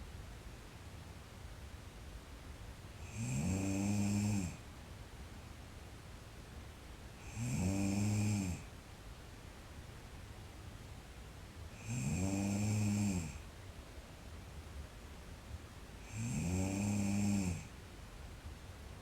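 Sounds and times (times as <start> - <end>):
woman snoring: 3.0 - 4.6, 7.2 - 8.7, 11.8 - 13.4, 16.0 - 17.7.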